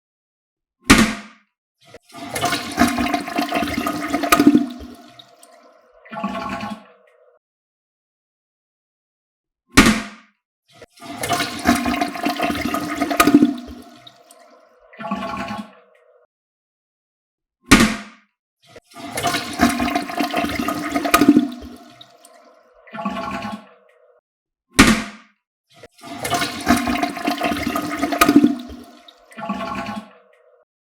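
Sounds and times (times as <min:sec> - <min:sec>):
toilet flushing water rushing: 0:02.0 - 0:07.0, 0:10.8 - 0:15.9, 0:18.8 - 0:23.8, 0:25.9 - 0:30.6
water gurgling in drain: 0:02.0 - 0:07.2, 0:10.8 - 0:16.2, 0:18.8 - 0:24.1, 0:25.8 - 0:30.6
toilet flush clunk: 0:02.1 - 0:06.8, 0:10.9 - 0:15.7, 0:18.9 - 0:23.7, 0:26.0 - 0:30.5
toilet flush handle click: 0:03.8 - 0:04.9, 0:11.2 - 0:13.9.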